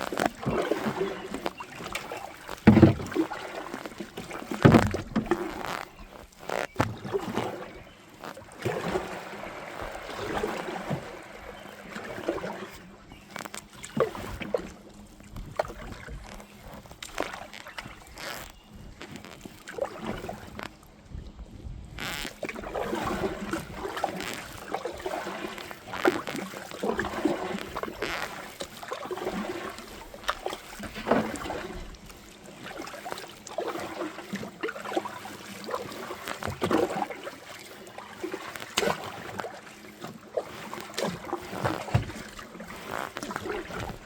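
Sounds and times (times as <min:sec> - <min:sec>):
knocks against hull: 0:00.0 - 0:06.0
water splashing around kayak: 0:00.0 - 0:44.0.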